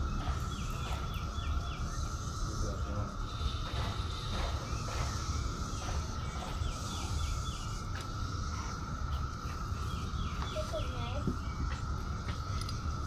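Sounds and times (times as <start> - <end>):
bird singing: 0.0 - 13.0
cicadas droning: 0.0 - 13.0.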